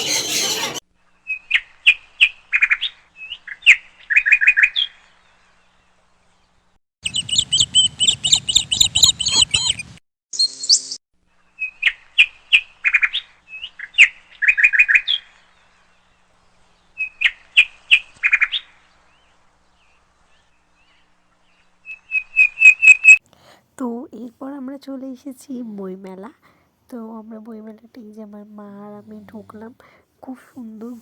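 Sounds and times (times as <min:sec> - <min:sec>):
small birds chirping: 0:07.0 - 0:11.0.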